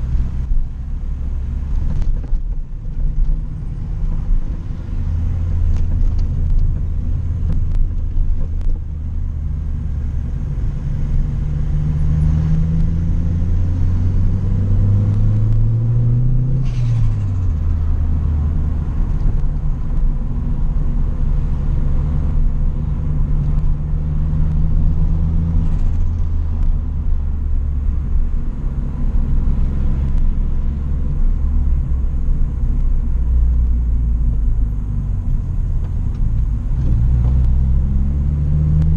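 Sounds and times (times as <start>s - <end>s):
car engine accelerating: 0.0s - 38.9s.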